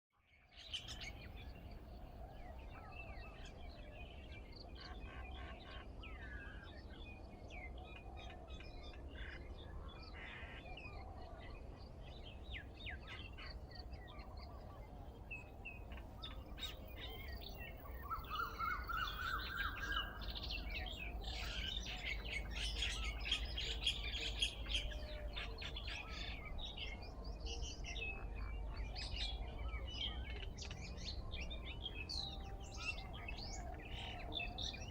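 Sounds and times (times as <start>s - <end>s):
birds chirping and calling: 7.7s - 34.9s.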